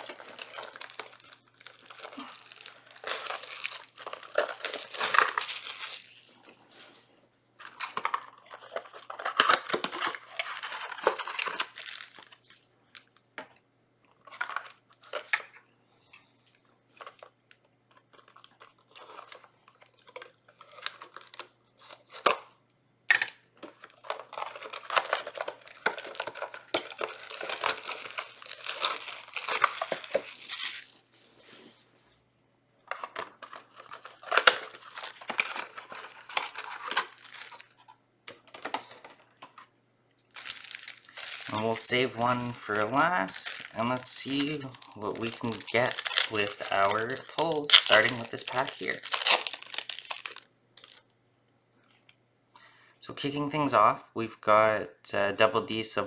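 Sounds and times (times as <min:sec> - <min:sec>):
card pack wrappers tearing: 0:00.0 - 0:06.5, 0:07.6 - 0:13.2, 0:18.1 - 0:19.4, 0:20.0 - 0:22.4, 0:23.1 - 0:31.2, 0:32.9 - 0:37.8, 0:40.3 - 0:51.0.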